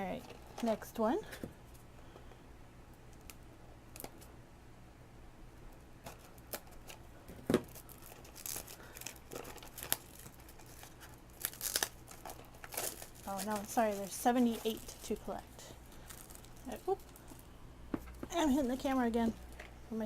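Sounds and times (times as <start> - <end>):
packaging being torn and crinkled: 6.0 - 7.0, 7.6 - 15.2, 15.9 - 17.5.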